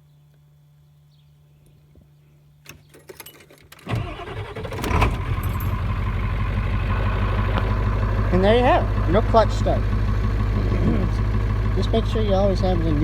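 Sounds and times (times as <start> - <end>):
starter motor clattering: 2.7 - 13.0
diesel engine starting and idling: 3.8 - 13.0.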